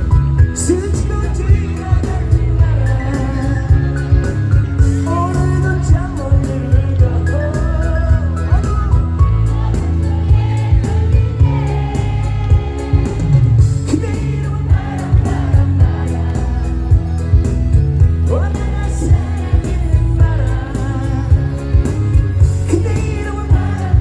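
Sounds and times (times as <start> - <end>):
pop band playing: 0.0 - 24.0
man singing: 0.2 - 9.8, 12.9 - 24.0.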